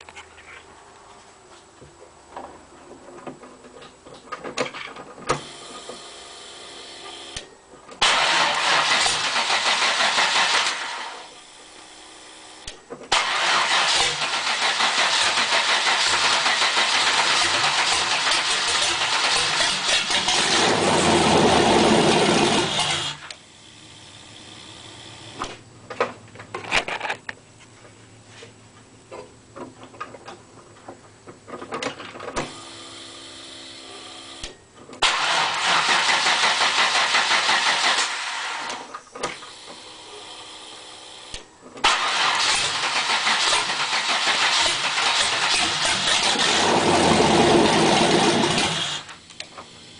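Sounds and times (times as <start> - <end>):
car engine running and restarting: 8.0 - 12.4, 13.1 - 25.4, 35.0 - 40.9, 41.8 - 49.9.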